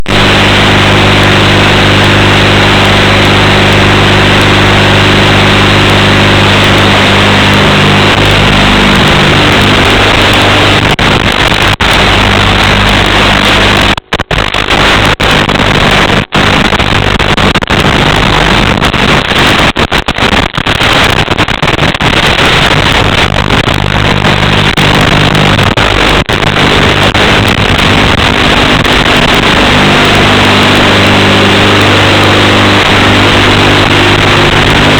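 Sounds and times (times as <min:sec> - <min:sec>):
drone motors buzzing: 0:00.0 - 0:14.0, 0:22.7 - 0:34.9.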